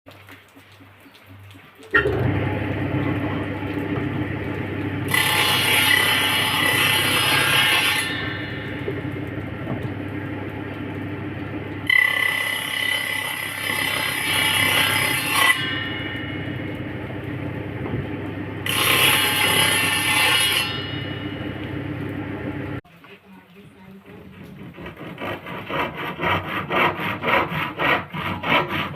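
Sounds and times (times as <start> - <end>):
low steady hum: 0.6 - 12.0, 15.7 - 24.8
hand saw rasping strokes: 5.1 - 8.8, 18.6 - 20.9, 24.1 - 28.9.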